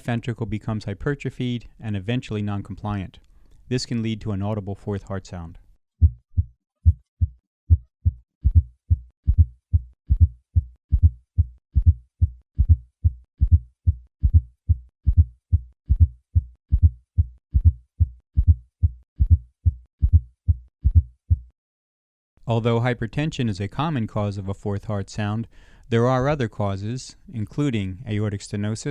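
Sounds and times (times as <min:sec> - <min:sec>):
heartbeat through stethoscope: 0:06.0 - 0:21.5.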